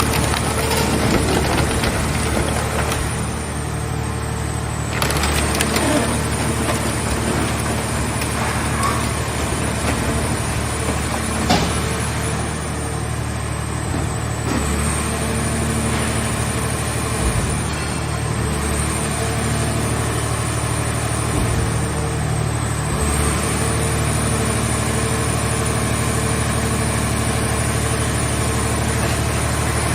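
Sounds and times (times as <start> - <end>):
car body cracking and creaking: 0.0 - 3.4, 4.8 - 11.8
baler power unit humming and whining: 0.0 - 29.9.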